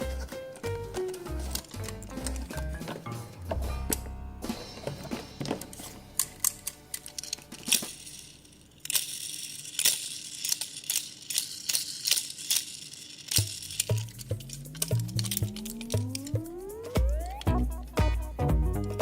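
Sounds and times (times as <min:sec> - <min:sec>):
toy cars clicking: 0:00.0 - 0:03.1, 0:05.7 - 0:19.0
cardboard boxes crinkling: 0:00.1 - 0:08.0.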